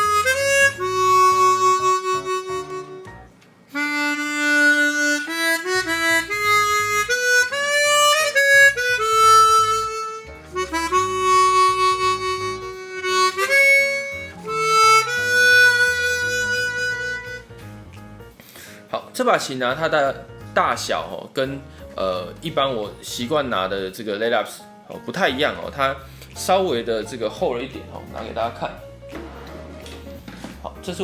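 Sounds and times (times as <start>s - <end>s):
harmonica melody: 0.0s - 18.3s.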